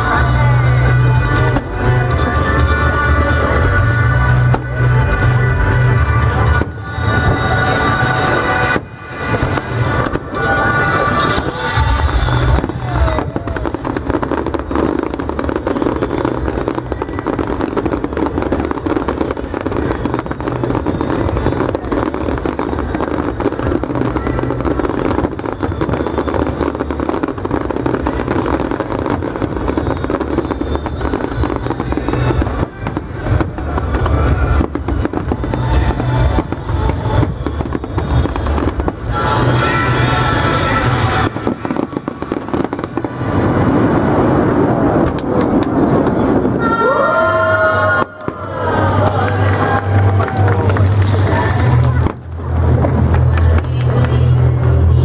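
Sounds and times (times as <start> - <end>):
fireworks low booms: 0.0 - 46.9
fireworks crackling: 0.0 - 55.0.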